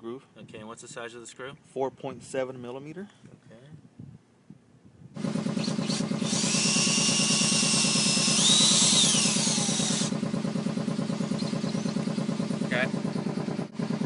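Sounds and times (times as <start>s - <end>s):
power drill motor whining: 5.2s - 10.2s.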